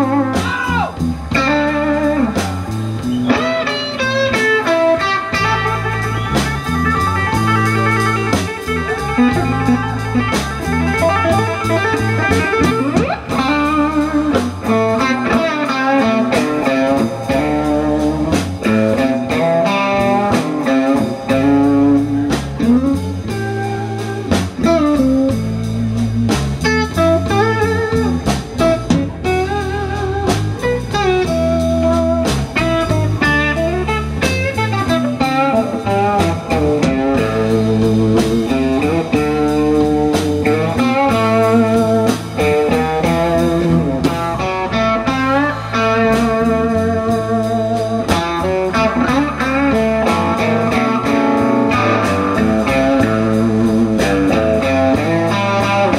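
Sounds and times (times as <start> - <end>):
blues band playing: 0.0 - 55.9
lead guitar bending notes: 0.0 - 55.9.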